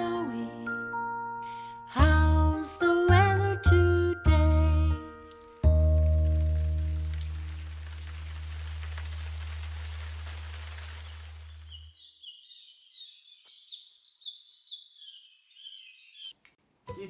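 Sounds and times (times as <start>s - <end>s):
steady hiss: 5.6s - 11.8s
birds chirping: 6.1s - 16.5s.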